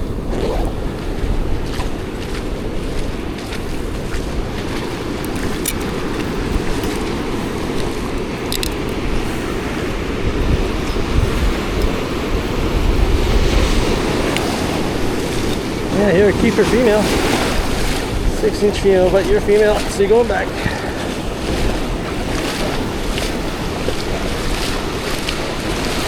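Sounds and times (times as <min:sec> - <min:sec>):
ocean surf washing on beach: 0:00.0 - 0:26.0
wind buffeting microphone: 0:00.0 - 0:26.0.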